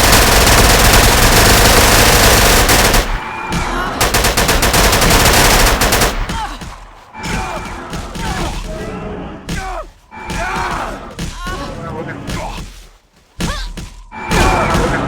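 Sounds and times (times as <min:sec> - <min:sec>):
rapid automatic gunfire: 0:00.0 - 0:06.6.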